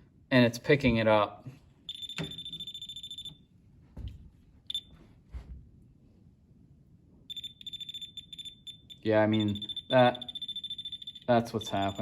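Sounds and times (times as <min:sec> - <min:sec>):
voltage tester beeping: 0:01.9 - 0:03.4, 0:07.3 - 0:12.0.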